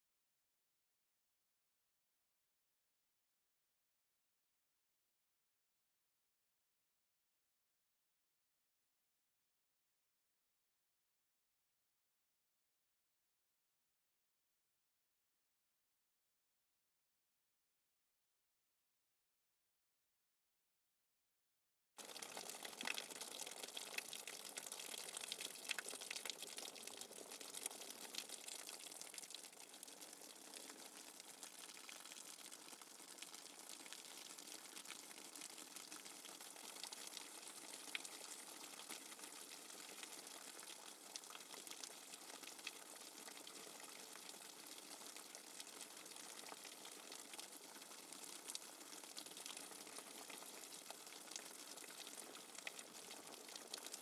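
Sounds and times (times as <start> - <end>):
steady rain falling: 22.0 - 52.0
individual raindrop ticks: 22.1 - 30.8.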